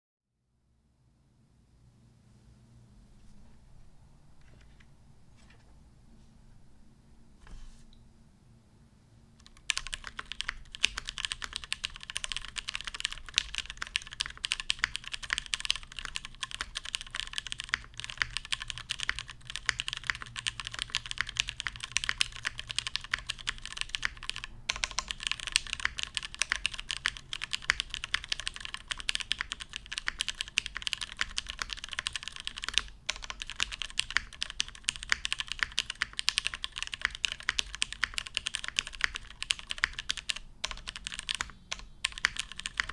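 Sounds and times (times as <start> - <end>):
fast mechanical keyboard typing: 9.4 - 42.9.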